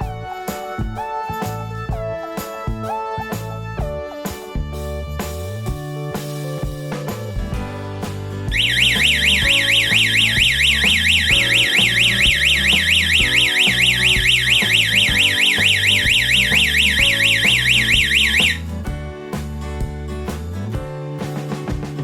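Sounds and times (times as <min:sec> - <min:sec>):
guitar background music: 0:00.0 - 0:22.0
warbling security alarm siren: 0:08.5 - 0:18.6.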